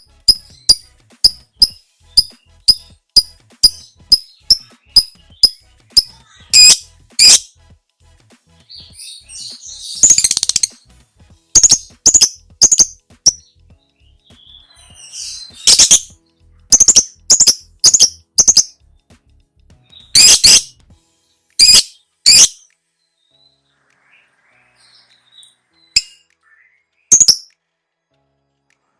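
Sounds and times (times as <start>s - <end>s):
bird chirping and chattering: 0.2s - 7.5s, 9.4s - 10.8s, 11.6s - 13.4s, 14.4s - 18.8s, 20.0s - 20.7s, 21.6s - 22.6s, 27.1s - 27.5s.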